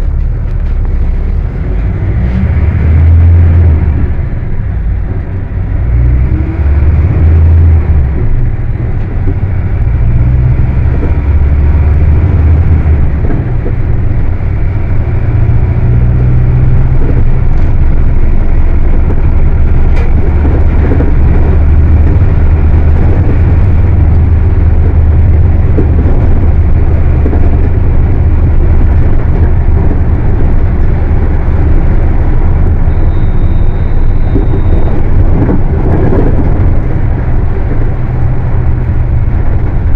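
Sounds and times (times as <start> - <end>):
bus diesel engine drone: 0.0 - 39.9.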